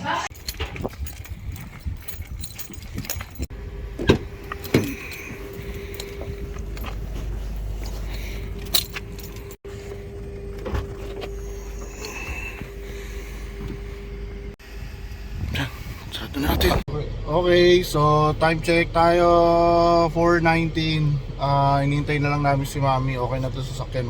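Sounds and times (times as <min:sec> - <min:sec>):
sharp clunks and rattling: 0:00.3 - 0:09.6
car engine idling: 0:02.6 - 0:24.0.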